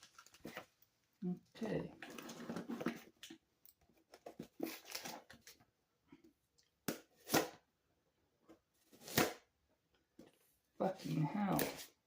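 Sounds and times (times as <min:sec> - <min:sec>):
cardboard box rustling: 0:02.0 - 0:03.2.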